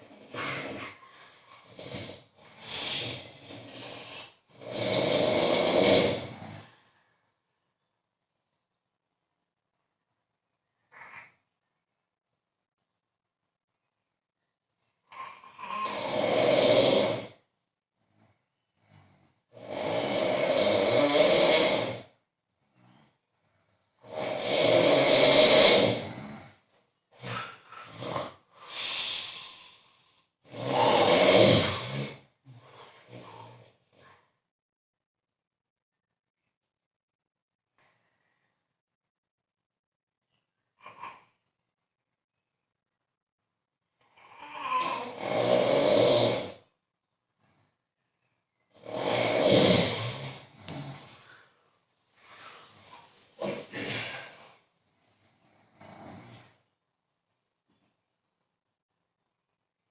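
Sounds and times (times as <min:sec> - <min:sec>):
snorts and breaths: 0:00.0 - 0:07.2, 0:15.1 - 0:34.3, 0:44.1 - 0:46.6, 0:48.8 - 0:56.7
man snoring loudly: 0:01.6 - 0:06.7, 0:15.5 - 0:17.5, 0:18.9 - 0:22.2, 0:24.0 - 0:26.6, 0:27.2 - 0:29.8, 0:30.4 - 0:32.4, 0:44.3 - 0:46.7, 0:48.8 - 0:51.1, 0:53.4 - 0:54.5.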